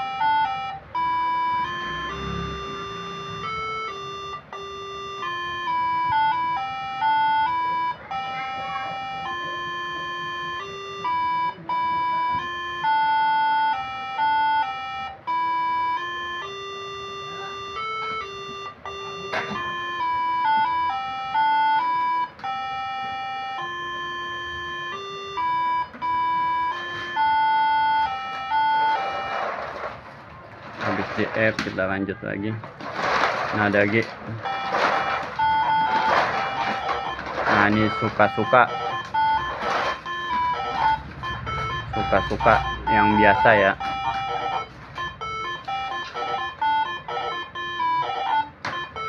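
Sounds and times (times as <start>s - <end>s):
musical air horn tune: 1.6s - 5.8s, 34.4s - 48.5s.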